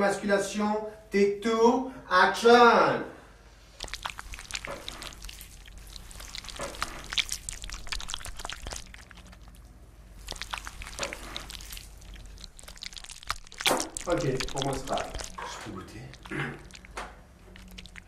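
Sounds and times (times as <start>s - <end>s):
wet squelching food: 3.5s - 18.0s.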